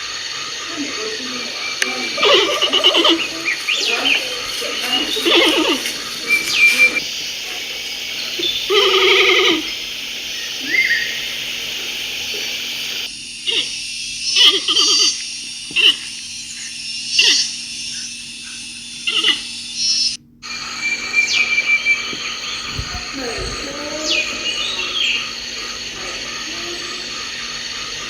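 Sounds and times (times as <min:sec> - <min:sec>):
bear calling: 0:04.9 - 0:13.0, 0:21.4 - 0:24.8.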